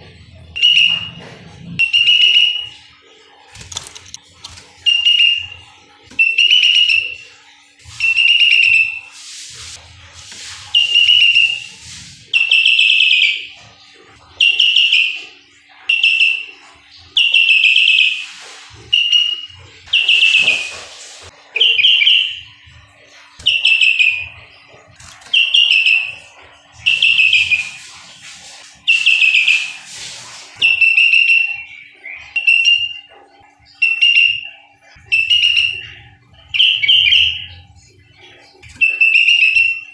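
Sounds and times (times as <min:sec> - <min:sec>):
bird whistled chattering calls: 0:00.4 - 0:01.2, 0:01.8 - 0:02.8, 0:03.6 - 0:07.3, 0:07.9 - 0:09.1, 0:10.7 - 0:13.6, 0:14.4 - 0:15.2, 0:17.2 - 0:22.6, 0:23.4 - 0:24.4, 0:25.1 - 0:33.1, 0:33.7 - 0:37.7, 0:38.6 - 0:39.9.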